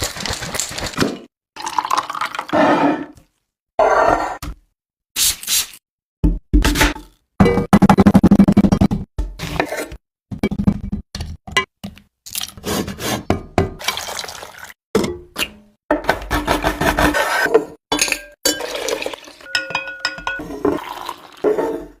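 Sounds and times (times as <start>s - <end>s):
dishes and utensils clattering: 17.4s - 22.0s.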